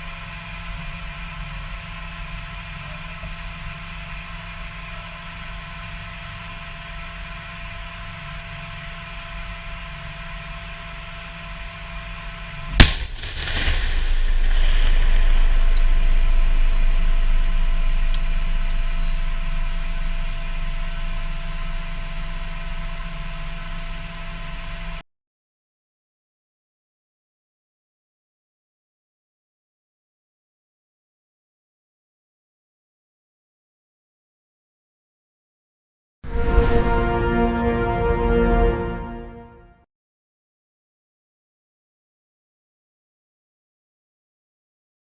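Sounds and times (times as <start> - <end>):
vehicle engine hum with whine: 0.0 - 25.0
large explosion with deep rumble: 12.8 - 20.4, 36.3 - 38.0.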